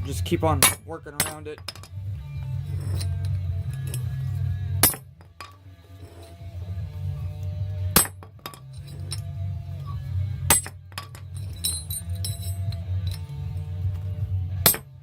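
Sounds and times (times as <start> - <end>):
steel clinks: 2.6 - 6.4, 8.0 - 14.0.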